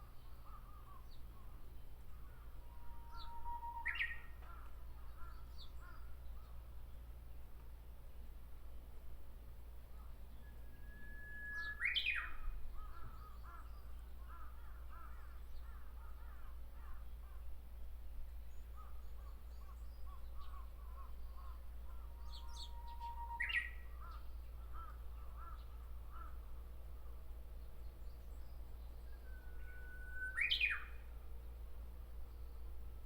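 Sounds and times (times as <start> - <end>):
bird singing whistled song: 2.8 - 4.4, 10.3 - 12.7, 22.2 - 24.2, 28.0 - 31.1.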